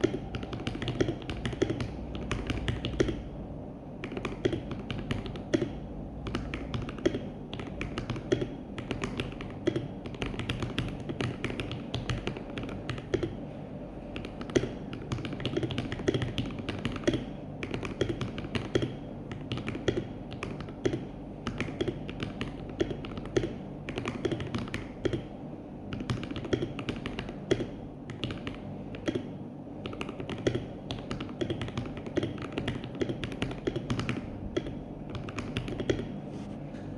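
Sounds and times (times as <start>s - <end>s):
mechanical keyboard typing: 0.0s - 3.2s, 4.0s - 13.4s, 14.2s - 25.3s, 25.9s - 36.1s.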